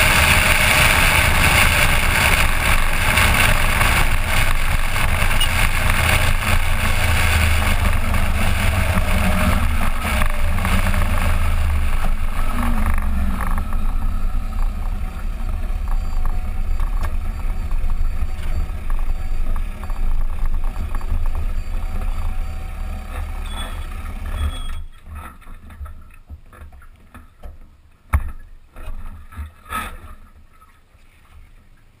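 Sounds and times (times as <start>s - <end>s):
wind rush: 0.0s - 22.0s
motorcycle engine running: 0.0s - 24.9s.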